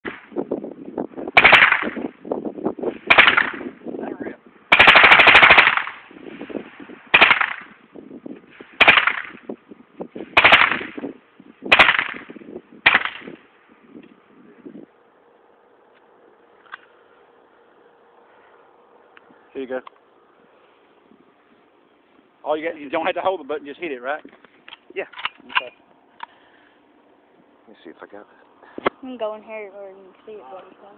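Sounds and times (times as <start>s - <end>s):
full-auto gunfire burst: 1.4s - 2.0s, 3.0s - 3.7s, 4.7s - 6.1s, 7.1s - 7.7s, 8.8s - 9.4s, 10.4s - 11.0s, 11.7s - 13.4s
suppressed rifle shots: 1.4s - 2.1s, 3.0s - 3.8s, 4.7s - 6.1s, 7.1s - 7.8s, 8.8s - 9.5s, 10.4s - 11.1s, 11.7s - 13.4s.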